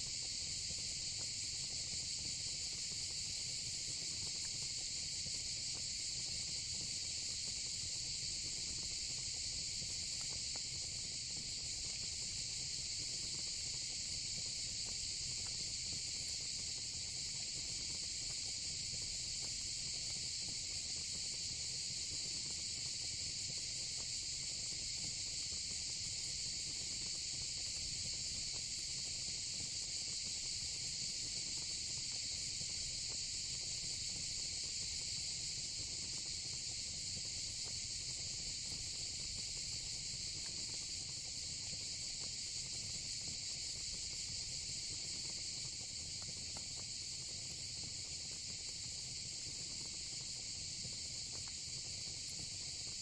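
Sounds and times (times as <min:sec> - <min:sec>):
crickets chirping: 0:47.2 - 0:53.0.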